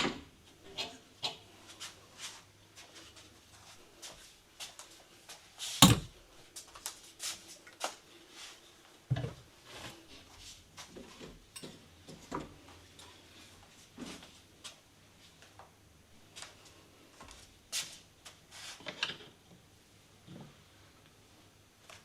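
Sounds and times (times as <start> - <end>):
loud sharp thump: 5.8 - 6.1.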